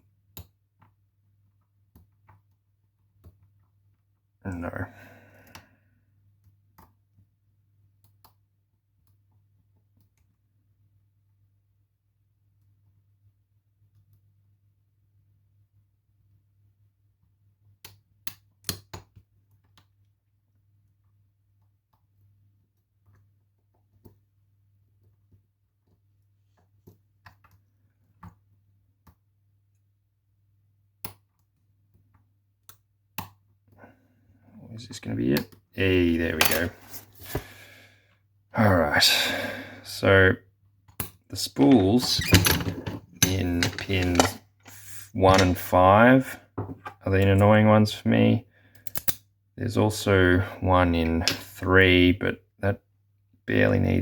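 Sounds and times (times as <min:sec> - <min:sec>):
lock picks clicking in lock: 0:48.8 - 0:49.2.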